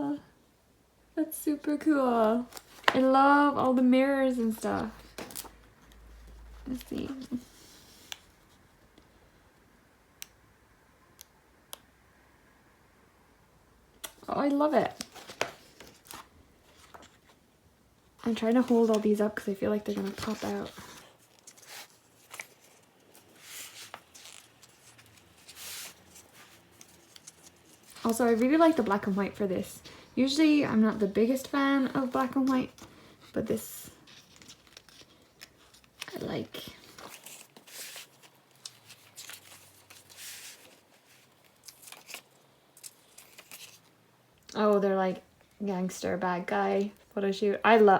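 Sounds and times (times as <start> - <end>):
paper pages rustling: 14.8 - 17.4, 18.3 - 29.5, 30.9 - 43.9.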